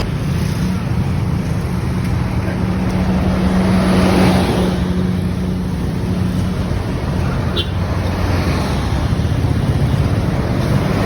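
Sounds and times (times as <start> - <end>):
bus diesel engine humming: 0.0 - 11.0.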